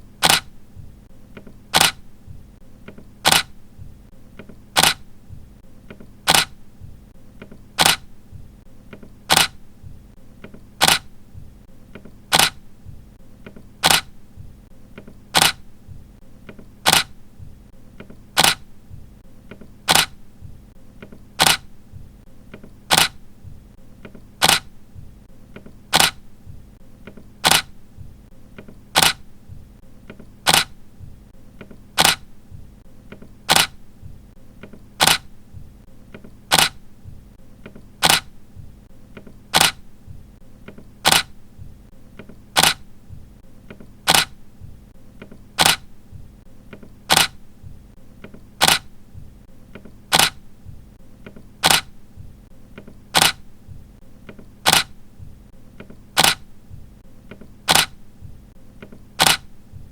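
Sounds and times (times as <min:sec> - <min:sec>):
camera shutter clicks: 0:00.2 - 0:00.5, 0:01.7 - 0:02.0, 0:03.2 - 0:03.6, 0:04.7 - 0:05.1, 0:06.2 - 0:06.6, 0:07.8 - 0:08.1, 0:09.3 - 0:09.6, 0:10.8 - 0:11.1, 0:12.3 - 0:12.6, 0:13.8 - 0:14.2, 0:15.3 - 0:15.6, 0:16.8 - 0:17.2, 0:18.4 - 0:18.7, 0:19.8 - 0:20.2, 0:21.4 - 0:21.7, 0:22.9 - 0:23.2, 0:24.4 - 0:24.7, 0:25.9 - 0:26.2, 0:27.4 - 0:27.8, 0:28.9 - 0:29.2, 0:30.4 - 0:30.8, 0:32.0 - 0:32.3, 0:33.5 - 0:33.8, 0:35.0 - 0:35.3, 0:36.5 - 0:36.8, 0:38.0 - 0:38.3, 0:39.5 - 0:39.8, 0:41.0 - 0:41.4, 0:42.6 - 0:42.8, 0:44.0 - 0:44.4, 0:45.6 - 0:45.9, 0:47.1 - 0:47.4, 0:48.6 - 0:48.9, 0:50.1 - 0:50.4, 0:51.6 - 0:51.9, 0:53.1 - 0:53.4, 0:54.6 - 0:55.0, 0:56.2 - 0:56.4, 0:57.7 - 0:58.0, 0:59.2 - 0:59.5.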